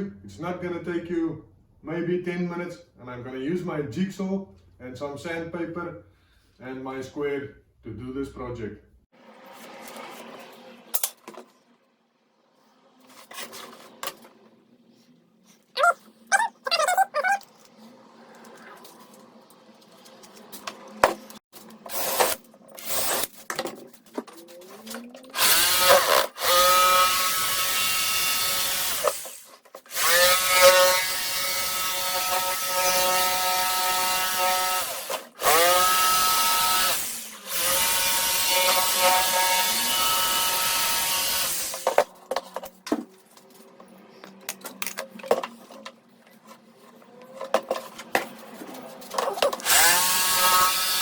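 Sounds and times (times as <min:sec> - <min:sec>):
knocks and handling sounds: 0:23.3 - 0:25.3, 0:41.7 - 0:49.7
electric jigsaw cutting board: 0:25.3 - 0:42.1, 0:49.3 - 0:51.0.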